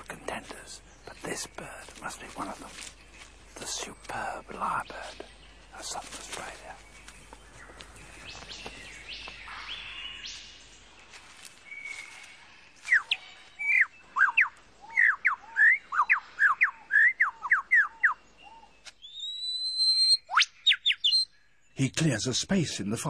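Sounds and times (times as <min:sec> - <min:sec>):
faint background noise: 0:00.0 - 0:19.6
bird singing sweeping whistles: 0:12.9 - 0:18.2, 0:19.0 - 0:21.3.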